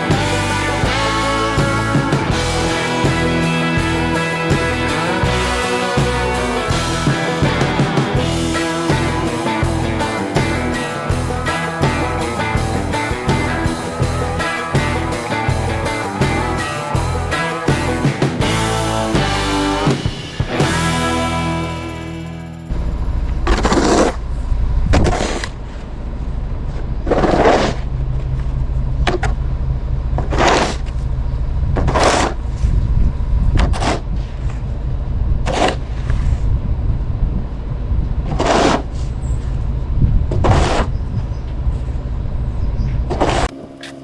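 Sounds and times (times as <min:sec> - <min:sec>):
pickup truck engine running: 0:00.0 - 0:24.9.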